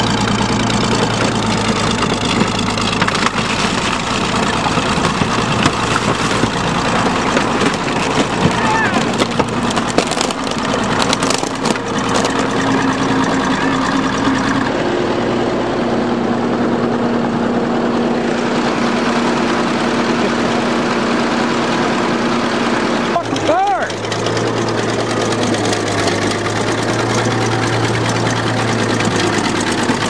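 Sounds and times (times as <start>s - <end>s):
bulldozer diesel engine running: 0.0s - 30.0s
sharp knocks: 0.8s - 12.6s.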